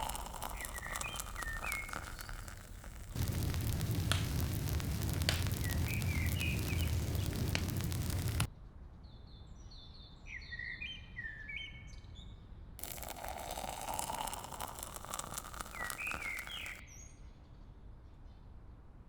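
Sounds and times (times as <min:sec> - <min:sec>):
sharp clicks: 0:00.0 - 0:08.5
small birds chirping: 0:00.0 - 0:08.5, 0:15.4 - 0:16.8.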